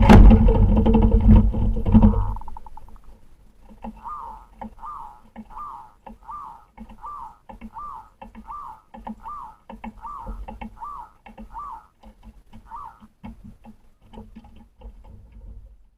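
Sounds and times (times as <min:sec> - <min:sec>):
whistled bird call: 0:04.0 - 0:11.9, 0:12.7 - 0:13.0.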